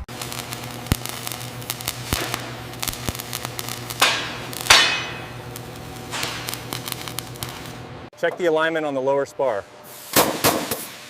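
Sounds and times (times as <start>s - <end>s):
low hum: 0.0s - 8.1s.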